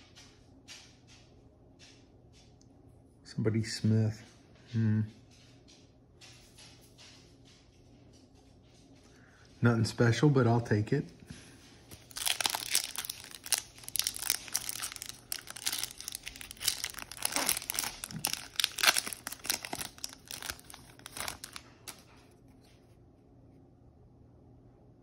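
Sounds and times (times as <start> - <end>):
wrapper tearing and crinkling: 11.9 - 22.0.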